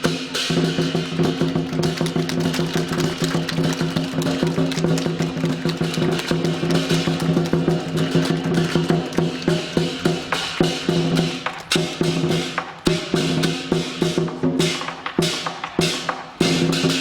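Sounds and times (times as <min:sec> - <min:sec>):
drum beating fast rhythm: 0:00.0 - 0:17.0
crashing cymbals: 0:05.8 - 0:17.0.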